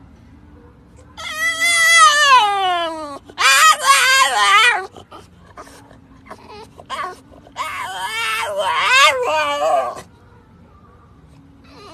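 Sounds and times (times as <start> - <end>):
faint dog squeaks: 1.0 - 10.1, 11.6 - 11.9
dog whining: 1.2 - 10.1, 11.7 - 11.9.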